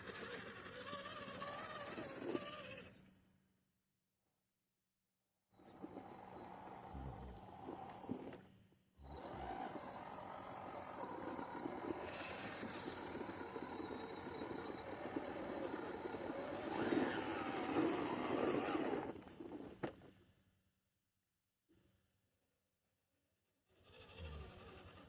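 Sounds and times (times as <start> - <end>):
toy car motor whining: 0.0 - 3.1, 5.5 - 8.4, 9.0 - 19.8, 23.7 - 25.0.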